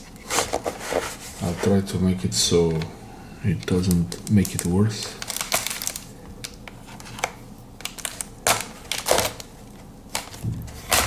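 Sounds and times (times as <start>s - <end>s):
packaging rustling and crinkling: 3.6s - 11.0s.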